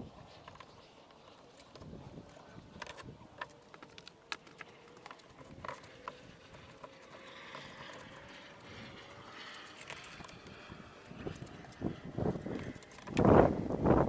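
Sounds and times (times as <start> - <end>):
stones and tools clicking: 2.6 - 13.3.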